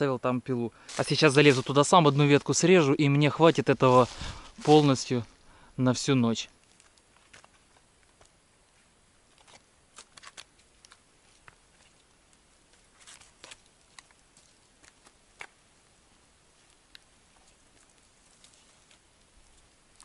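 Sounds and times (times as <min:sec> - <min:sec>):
faint clicks and rustles: 0:06.4 - 0:15.6, 0:16.5 - 0:20.0.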